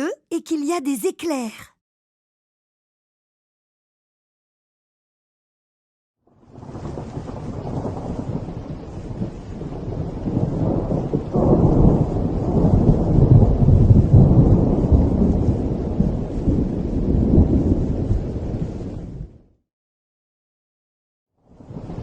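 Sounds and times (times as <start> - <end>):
thunder rumbling: 6.5 - 19.3.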